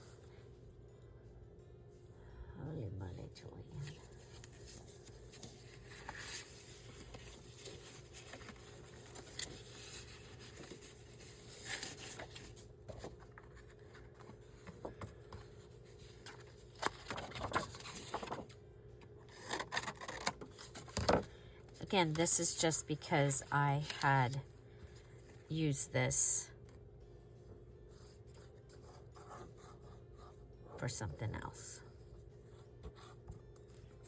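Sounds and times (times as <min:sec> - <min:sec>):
paper rubbing and scraping: 0:04.1 - 0:14.8.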